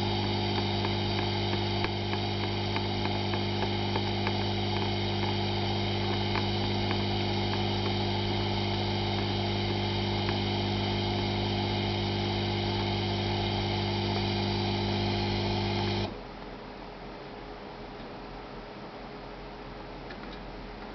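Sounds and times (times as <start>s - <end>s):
soldering station hum and hiss: 0.0s - 16.2s.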